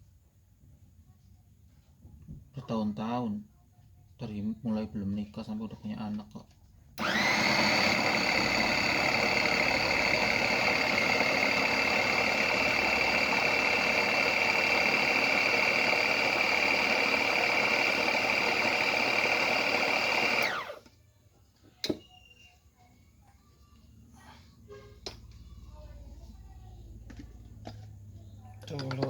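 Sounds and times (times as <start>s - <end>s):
electric meat chopper whining: 7.0s - 20.9s.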